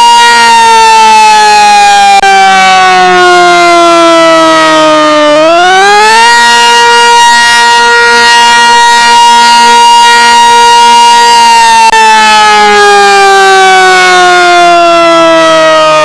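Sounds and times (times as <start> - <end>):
electromechanical siren wailing: 0.0 - 16.0.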